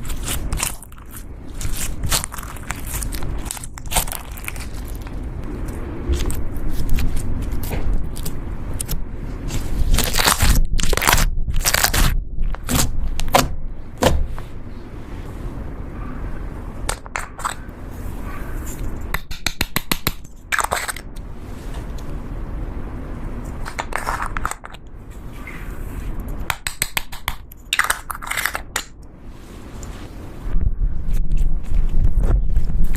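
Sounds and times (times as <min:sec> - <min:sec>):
slime crackling and crunching: 0:00.0 - 0:13.4.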